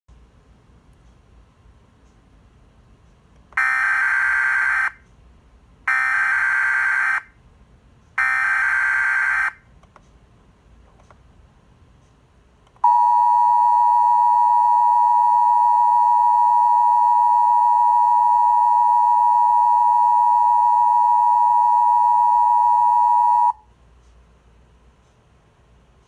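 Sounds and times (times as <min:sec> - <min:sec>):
two-tone emergency alert alarm: 0:03.6 - 0:05.0, 0:05.9 - 0:07.3, 0:08.2 - 0:09.6, 0:12.8 - 0:23.6.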